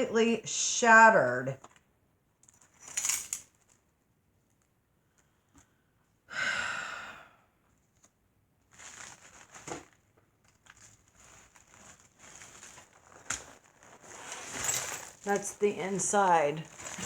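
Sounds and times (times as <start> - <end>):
woman sighing: 6.3 - 7.4
packaging rustling and crinkling: 7.9 - 17.0.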